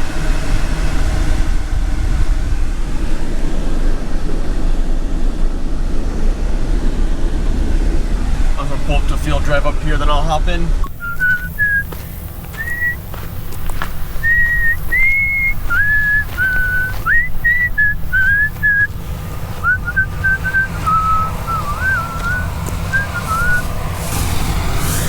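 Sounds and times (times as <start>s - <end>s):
vehicle rumbling while moving: 0.0s - 25.0s
person whistling a tune: 10.9s - 13.1s, 13.9s - 18.9s, 19.6s - 23.7s.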